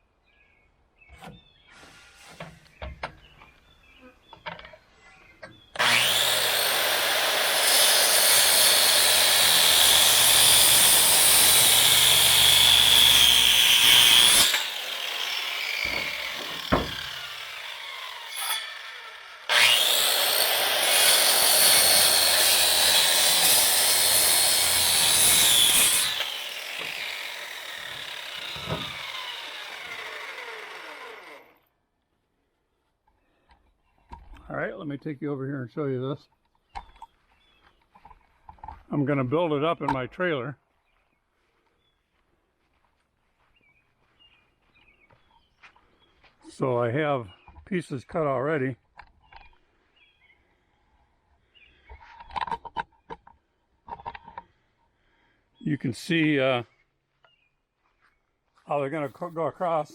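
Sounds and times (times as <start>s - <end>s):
power saw cutting wood: 5.8s - 31.6s
saw blade spinning down: 5.8s - 31.6s.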